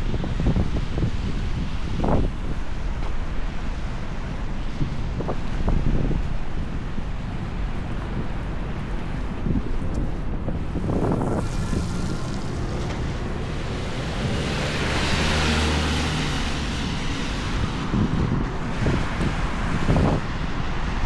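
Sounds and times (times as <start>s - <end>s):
city street traffic: 0.0s - 21.0s
vehicle passing: 10.0s - 21.0s.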